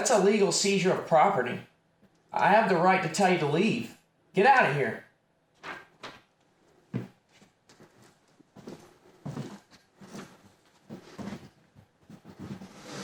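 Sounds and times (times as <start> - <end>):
faint knocks and movement: 5.5 - 13.0.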